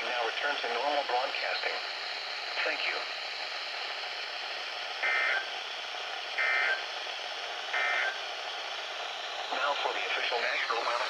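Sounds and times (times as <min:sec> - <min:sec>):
radio hiss: 0:09.5 - 0:11.0.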